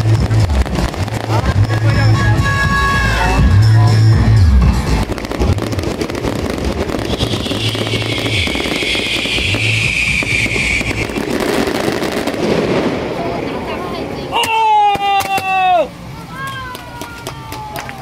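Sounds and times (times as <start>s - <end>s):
firecrackers crackling: 0.0s - 18.0s
hissing whistle: 7.0s - 11.7s.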